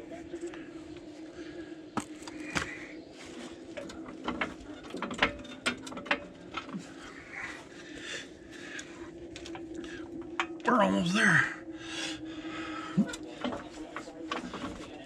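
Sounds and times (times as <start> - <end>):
hydraulic jack clicks and clunks: 3.8 - 6.8.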